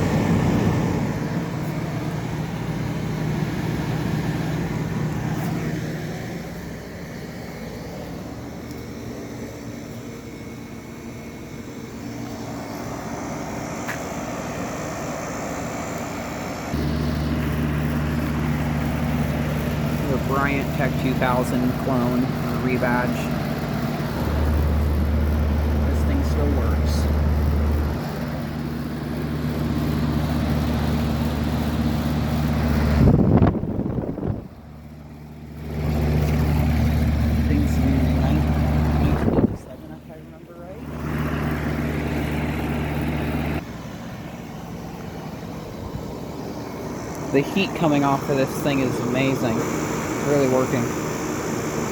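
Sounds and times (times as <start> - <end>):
air conditioner hum with fan rush: 0.0 - 51.9
loud low rumble: 16.8 - 43.6.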